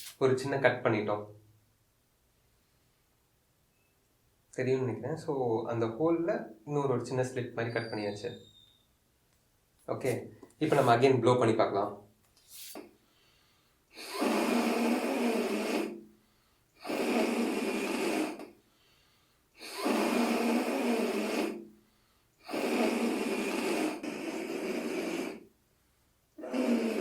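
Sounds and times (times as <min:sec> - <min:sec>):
balloon rubber fluttering rasp: 0:14.0 - 0:16.1, 0:16.8 - 0:18.6, 0:19.6 - 0:21.7, 0:22.4 - 0:25.5, 0:26.4 - 0:27.0.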